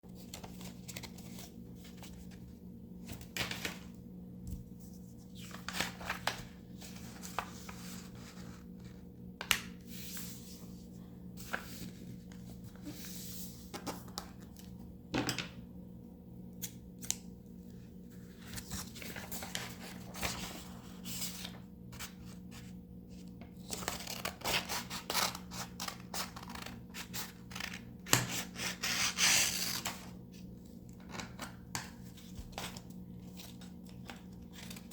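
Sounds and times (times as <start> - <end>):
low electrical hum: 0.0 - 34.9
paper rustling and crackling: 0.1 - 3.9, 4.7 - 10.6, 11.4 - 14.6, 18.2 - 22.7, 31.0 - 34.9.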